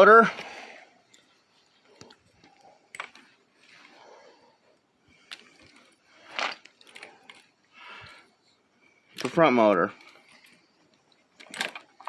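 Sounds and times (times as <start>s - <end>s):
cables rustling: 0.0s - 12.0s.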